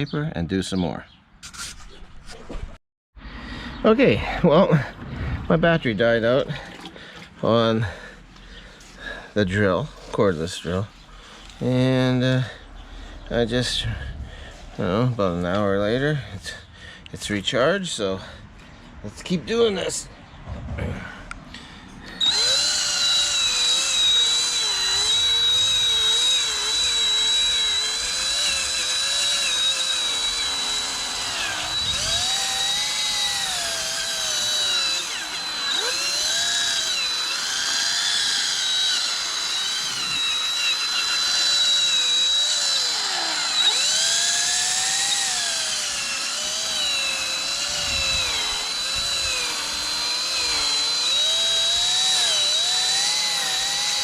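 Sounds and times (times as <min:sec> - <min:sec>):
cordless drill sanding plastic: 0:22.0 - 0:54.0.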